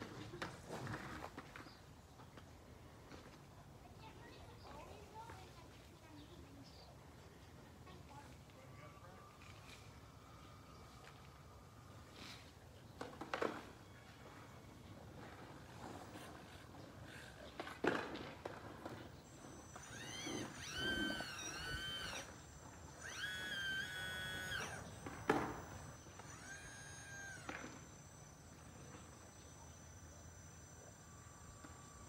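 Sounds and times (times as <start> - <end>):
electric hydraulic pump whining: 9.0 - 32.0
high electronic whine: 18.8 - 32.0.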